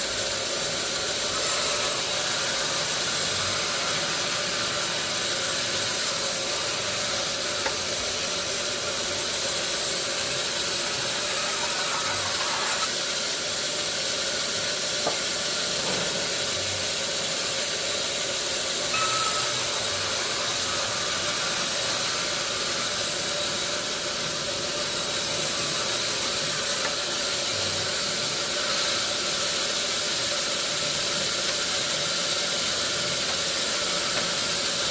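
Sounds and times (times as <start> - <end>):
sawmill machinery hissing: 0.0 - 34.9.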